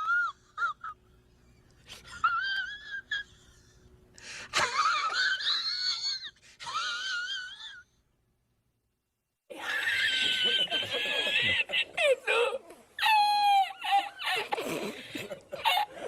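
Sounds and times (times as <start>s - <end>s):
high-pitched wheezing laugh: 4.4s - 7.9s, 9.5s - 16.0s.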